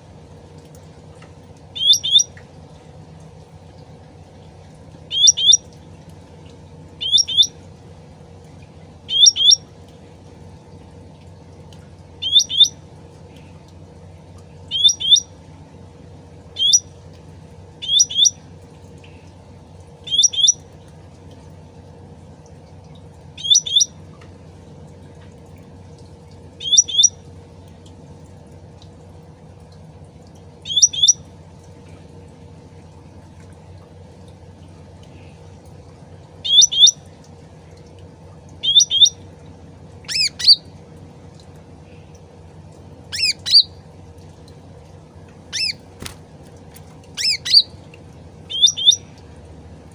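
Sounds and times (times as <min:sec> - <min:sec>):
bird calling: 0:01.7 - 0:02.4, 0:05.1 - 0:05.8, 0:07.0 - 0:07.6, 0:09.1 - 0:09.7, 0:12.2 - 0:13.5, 0:14.7 - 0:15.4, 0:16.6 - 0:17.0, 0:17.8 - 0:18.4, 0:20.0 - 0:20.6, 0:23.4 - 0:24.0, 0:26.6 - 0:27.2, 0:30.6 - 0:31.2, 0:36.4 - 0:37.1, 0:38.6 - 0:39.2, 0:40.0 - 0:40.7, 0:43.1 - 0:43.8, 0:45.5 - 0:46.2, 0:47.1 - 0:49.2.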